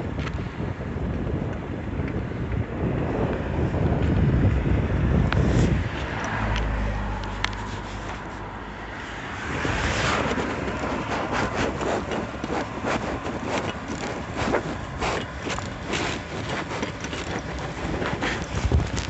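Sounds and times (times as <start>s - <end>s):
steady traffic noise: 0.0s - 19.0s
vehicle passing: 4.4s - 19.0s.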